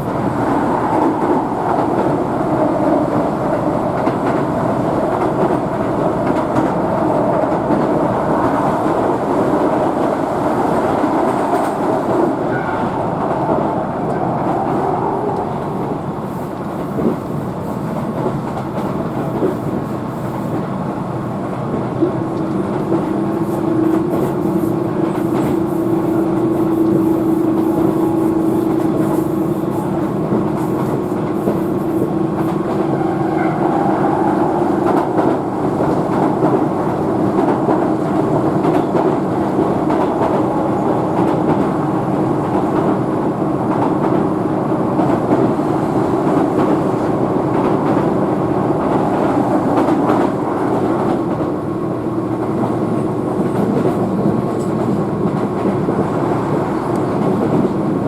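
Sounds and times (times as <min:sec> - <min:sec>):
train wheels rumbling on rails: 0:00.0 - 0:58.0
train motor hum: 0:22.0 - 0:37.4.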